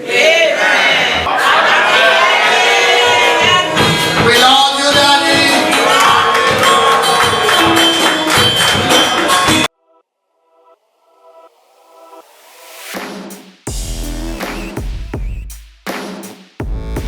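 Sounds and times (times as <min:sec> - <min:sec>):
upbeat music with singing: 0:02.8 - 0:09.7.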